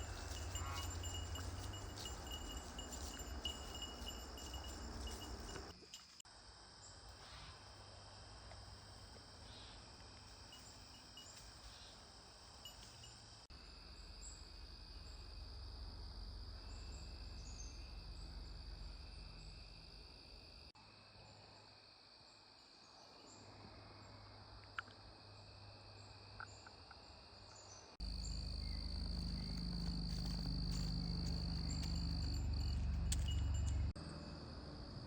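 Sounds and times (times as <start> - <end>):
insects trilling: 0.0 - 6.0, 28.0 - 33.7.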